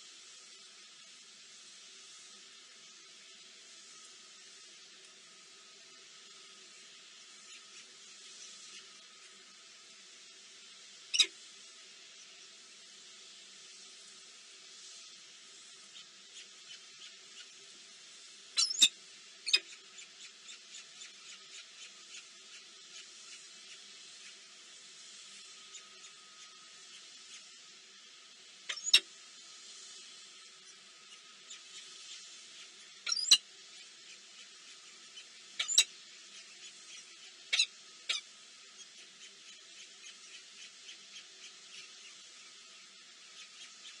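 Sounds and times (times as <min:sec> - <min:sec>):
faint steady hiss: 0:00.0 - 0:44.0
small birds chirping: 0:11.1 - 0:11.3, 0:15.8 - 0:17.6, 0:18.5 - 0:24.4, 0:28.7 - 0:29.0, 0:30.6 - 0:44.0
sharp squeaky bird call: 0:18.6 - 0:18.9, 0:28.7 - 0:29.0, 0:33.1 - 0:33.4, 0:35.6 - 0:35.9, 0:37.5 - 0:38.2.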